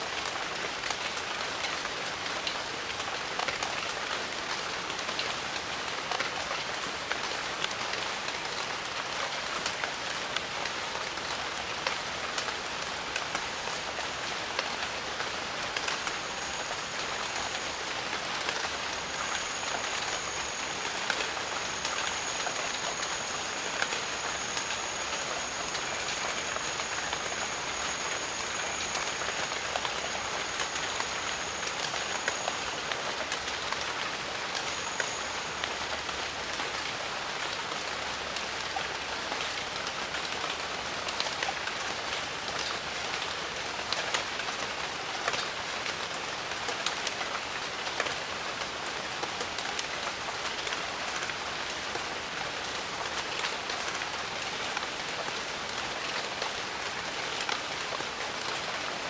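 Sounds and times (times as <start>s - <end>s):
steady rain: 0.0s - 59.0s
thin high steady tone: 8.4s - 36.9s.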